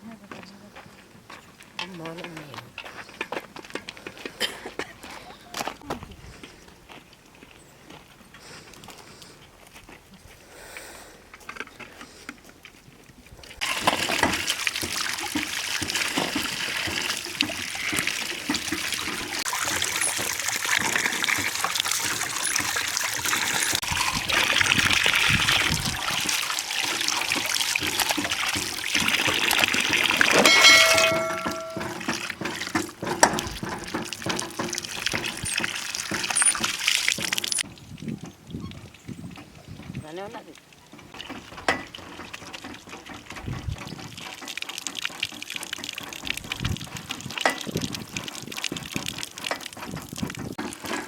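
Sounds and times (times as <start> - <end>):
water running and splashing: 13.4 - 51.0
clear ringing tone: 30.4 - 32.0.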